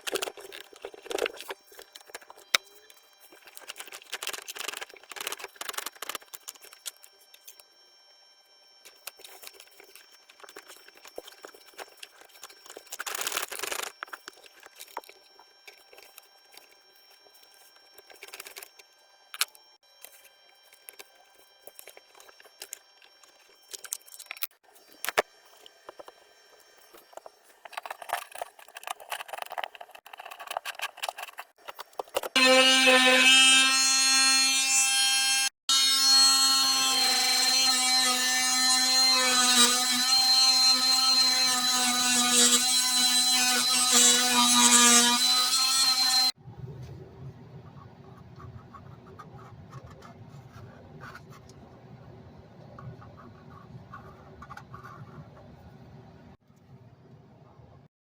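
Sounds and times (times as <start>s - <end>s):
handling rustling: 0.0s - 7.5s, 19.4s - 32.4s
handheld power tool running: 36.6s - 46.4s.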